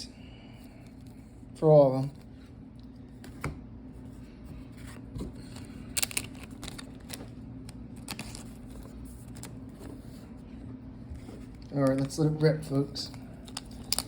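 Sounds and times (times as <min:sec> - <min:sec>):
steady low hum: 0:00.0 - 0:14.0
foil packs crackling: 0:05.6 - 0:09.6, 0:11.6 - 0:14.0.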